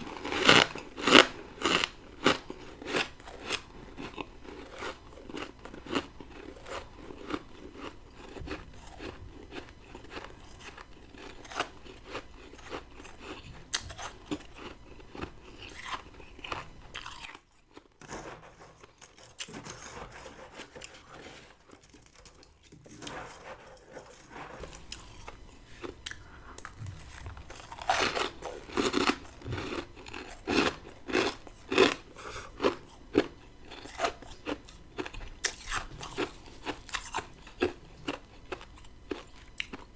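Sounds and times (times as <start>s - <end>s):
crunching and chewing frost: 0.0s - 39.9s.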